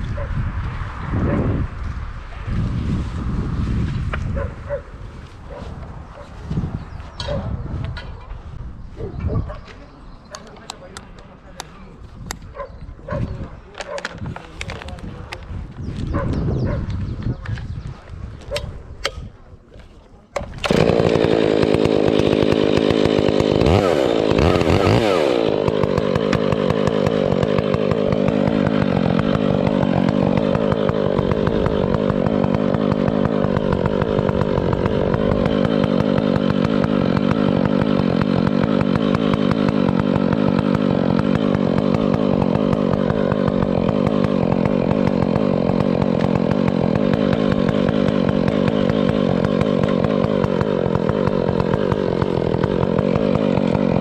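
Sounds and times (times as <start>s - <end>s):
chainsaw engine running: 9.6s - 16.0s, 18.5s - 54.0s.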